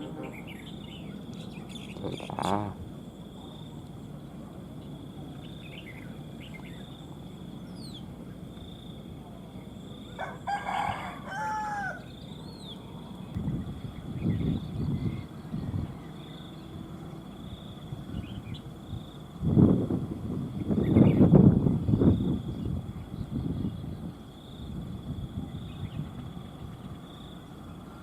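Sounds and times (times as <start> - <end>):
high falling bird calls: 0.0 - 2.9
insects droning: 0.0 - 28.0
rooster crowing: 10.2 - 12.2.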